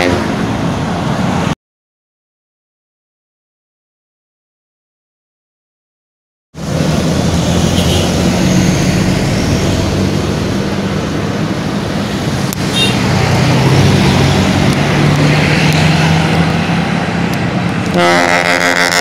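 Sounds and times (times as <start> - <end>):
heavy vehicle engine drone: 0.0 - 1.6, 6.6 - 19.0
traffic noise: 0.0 - 1.6, 6.6 - 19.0.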